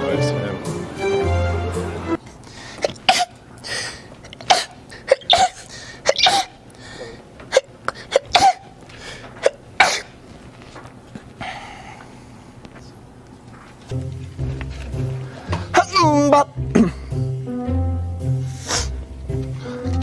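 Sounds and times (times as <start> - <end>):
person sneezing: 2.8 - 8.7, 9.4 - 10.2, 15.4 - 17.2, 18.5 - 19.0.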